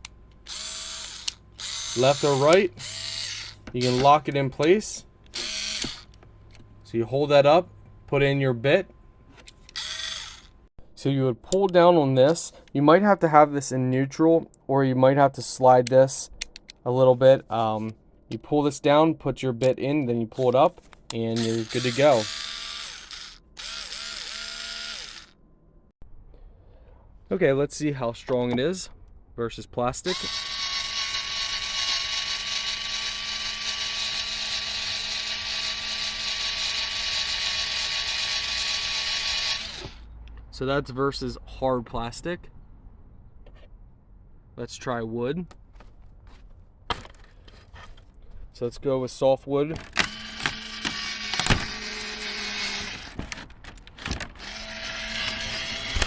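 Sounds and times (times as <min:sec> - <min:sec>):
electric screwdriver whining: 0:00.4 - 0:04.3, 0:05.3 - 0:06.2, 0:09.7 - 0:10.6, 0:21.4 - 0:25.4, 0:30.1 - 0:40.0, 0:49.8 - 0:56.0.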